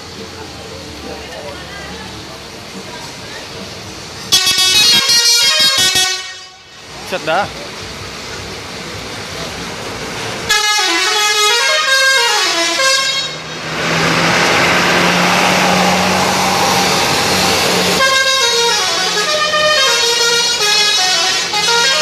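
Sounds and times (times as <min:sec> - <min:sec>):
bus engine running: 0:00.0 - 0:22.0
multi-tone musical bus horn: 0:04.3 - 0:06.8, 0:10.5 - 0:13.6, 0:17.5 - 0:22.0.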